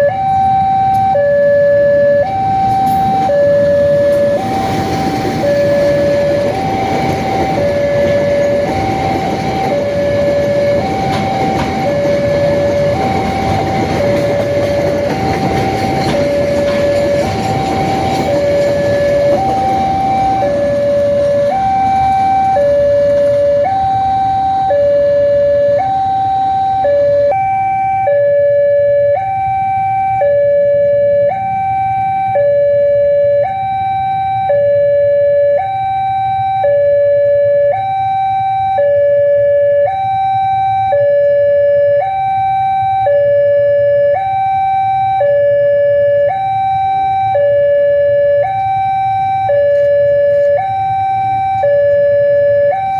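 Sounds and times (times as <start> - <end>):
passing train: 0.0 - 27.3, 46.0 - 47.4, 48.2 - 52.8
two-tone crossing alarm siren: 0.0 - 52.9.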